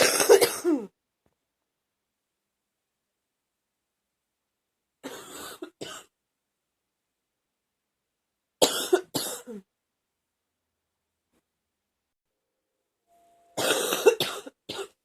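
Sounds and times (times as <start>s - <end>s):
woman coughing: 0.0s - 1.0s, 5.0s - 6.1s, 8.6s - 9.7s, 13.6s - 15.0s.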